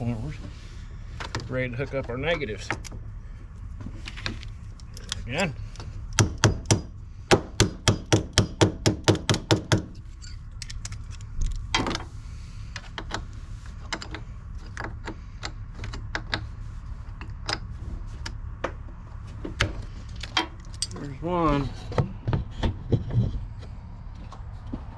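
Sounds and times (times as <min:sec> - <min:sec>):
tool tapping on metal: 0:06.2 - 0:10.0.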